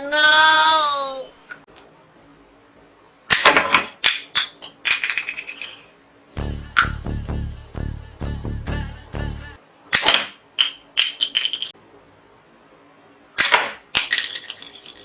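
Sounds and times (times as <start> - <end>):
plastic toy guns clicking: 3.3 - 5.6, 13.4 - 14.6
steady beat-like sound: 6.4 - 9.6.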